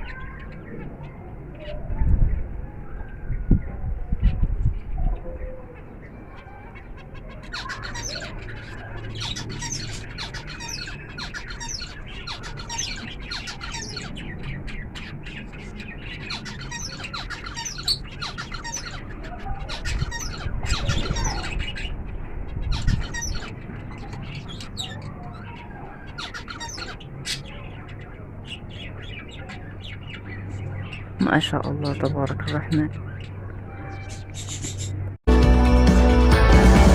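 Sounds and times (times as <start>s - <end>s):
finches chirping: 4.3s - 35.2s.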